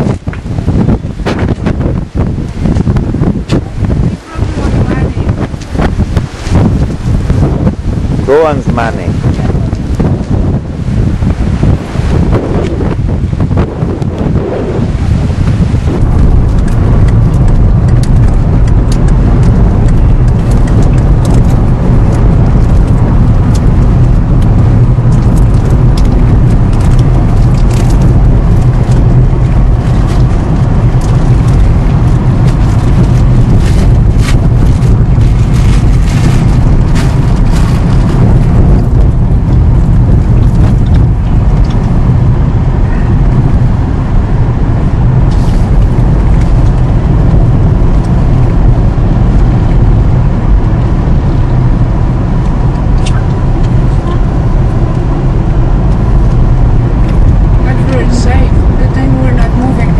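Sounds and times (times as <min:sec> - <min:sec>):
motor vehicle rumbling: 0:00.0 - 0:59.9
rattles and clicks: 0:16.0 - 0:42.0.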